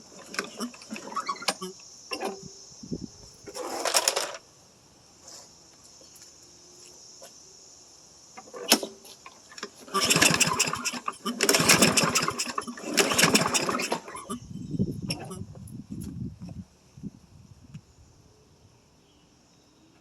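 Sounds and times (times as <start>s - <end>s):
engine cranking without catching: 0.0s - 2.4s, 9.6s - 15.4s
lawn mower recoil cord pulls: 0.0s - 2.4s, 3.4s - 4.4s, 8.4s - 14.5s
insects chirping: 0.0s - 20.0s.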